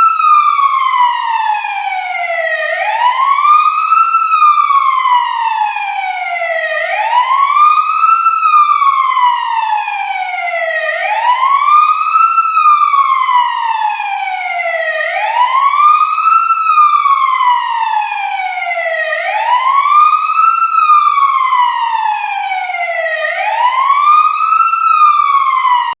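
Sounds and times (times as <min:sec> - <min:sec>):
siren wailing: 0:00.0 - 0:26.0.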